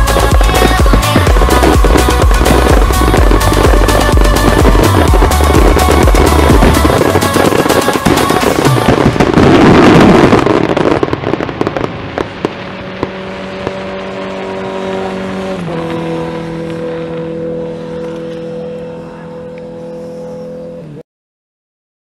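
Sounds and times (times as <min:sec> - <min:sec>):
music with held chords: 0:00.0 - 0:09.5
fireworks crackling and banging: 0:00.0 - 0:18.4.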